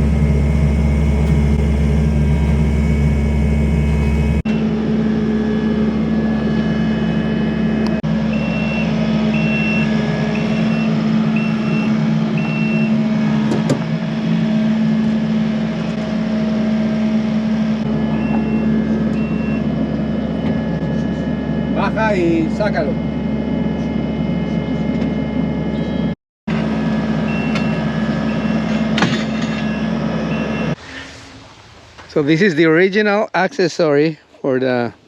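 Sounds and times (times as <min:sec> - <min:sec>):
tractor diesel engine running: 0:00.0 - 0:04.4.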